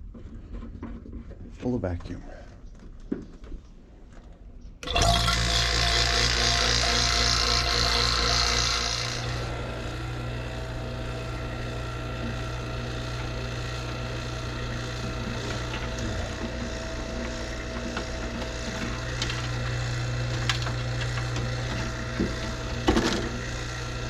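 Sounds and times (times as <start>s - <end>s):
vacuum pump motor hum: 4.8s - 24.0s.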